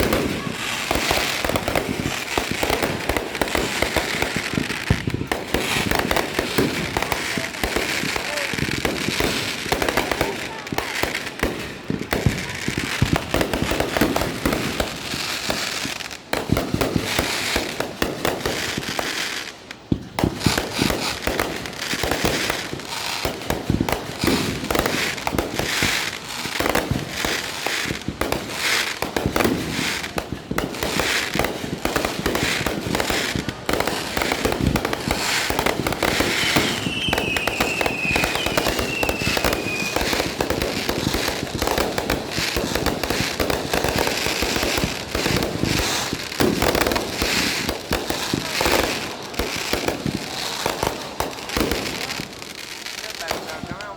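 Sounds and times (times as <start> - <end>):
firecracker bangs and crackle: 0.0 - 53.9
firework whistle sliding down: 36.3 - 40.0.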